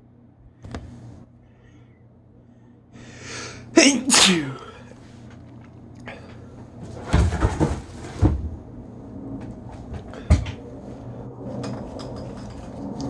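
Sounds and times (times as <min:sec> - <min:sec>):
rustling with bumps: 0:06.8 - 0:08.6.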